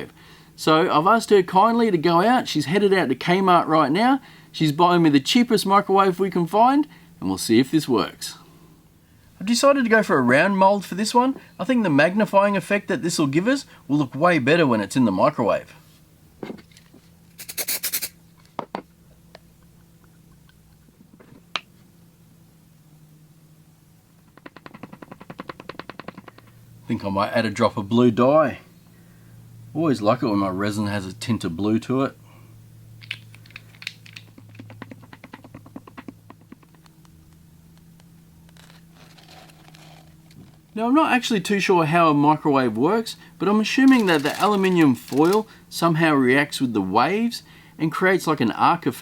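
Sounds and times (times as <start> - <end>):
faint low hum: 0.0 - 49.0
stick stirring resin in plastic cup: 43.8 - 45.5.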